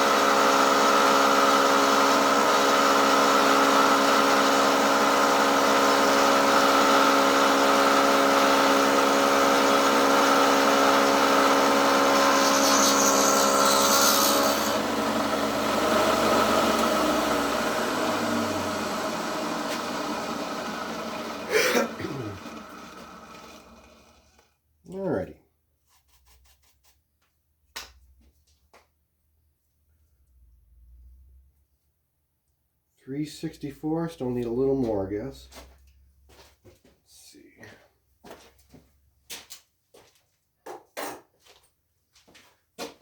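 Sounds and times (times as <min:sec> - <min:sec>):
milling machine whining: 0:00.0 - 0:24.4.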